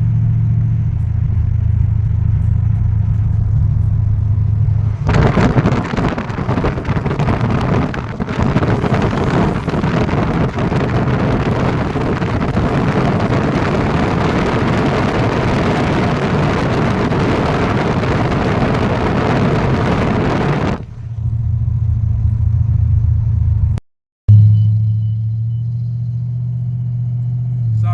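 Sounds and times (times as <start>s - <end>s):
microphone handling noise: 4.1s - 21.3s.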